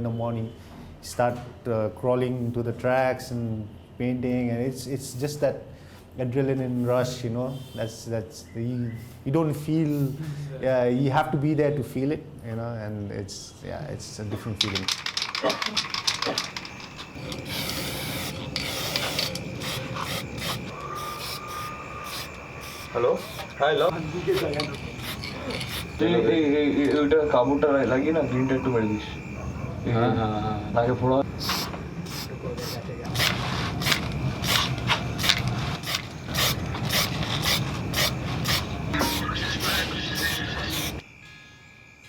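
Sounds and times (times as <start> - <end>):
aerosol spray can hissing: 16.4 - 26.0, 31.4 - 41.0.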